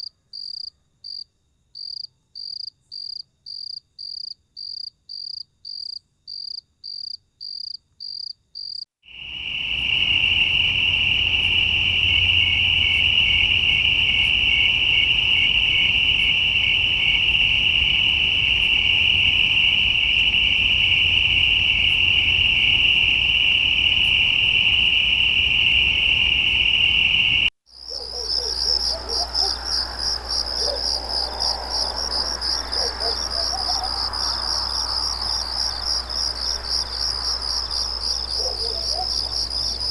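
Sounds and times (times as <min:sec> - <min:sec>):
crickets chirping: 0:00.0 - 0:39.9
low hum: 0:09.2 - 0:39.9.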